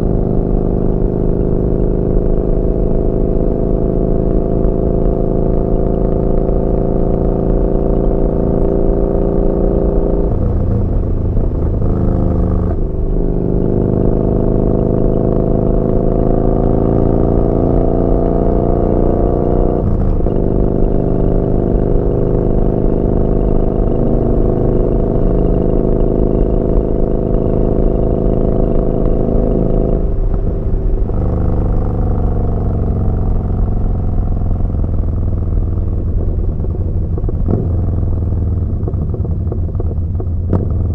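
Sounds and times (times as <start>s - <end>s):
motorcycle exhaust note: 0.0s - 40.9s.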